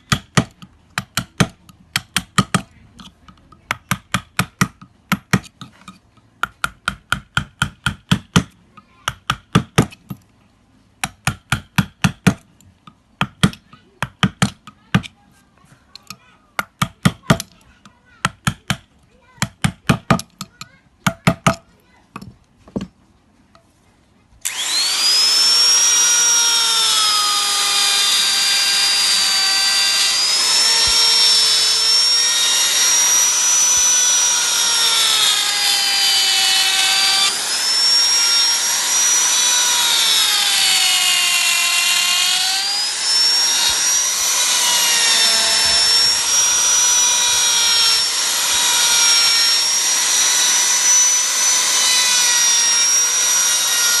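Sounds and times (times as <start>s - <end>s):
power tool cutting wood: 24.4s - 54.0s.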